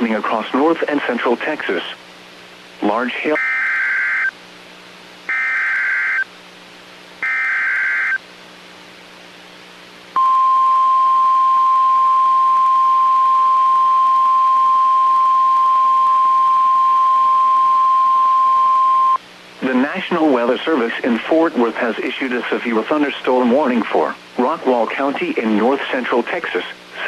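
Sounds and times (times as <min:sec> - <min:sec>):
steady warning alarm tone: 0:03.3 - 0:04.3, 0:05.3 - 0:06.3, 0:07.2 - 0:08.2
buzzing data bursts: 0:03.4 - 0:04.3, 0:05.3 - 0:06.3, 0:07.2 - 0:08.2.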